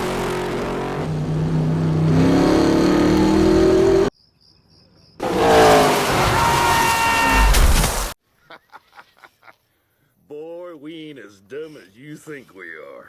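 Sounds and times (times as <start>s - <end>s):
race car engine revving: 0.0s - 4.1s, 5.2s - 7.0s.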